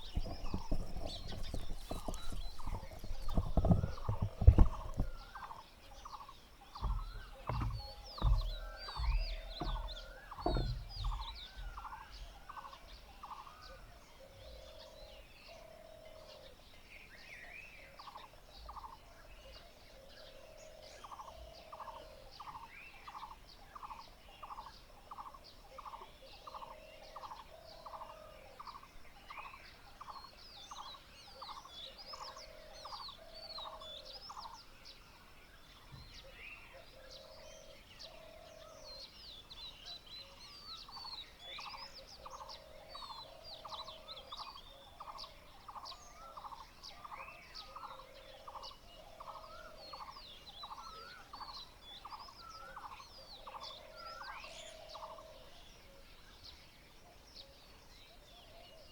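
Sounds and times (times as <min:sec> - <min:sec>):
low thumps: 0:00.0 - 0:05.5, 0:06.7 - 0:11.9
small birds chirping high: 0:00.0 - 0:58.9.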